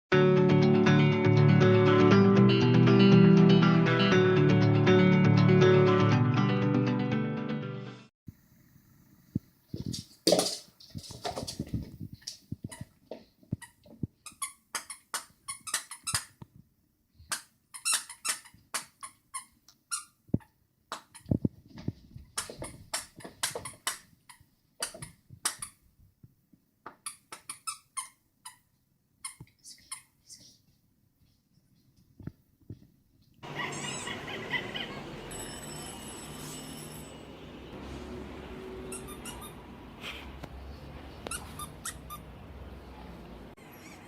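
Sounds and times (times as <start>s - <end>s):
squeaky dog toy squeaking: 13.6s - 16.4s, 17.3s - 20.2s, 27.0s - 30.2s, 38.8s - 39.6s, 41.3s - 42.3s.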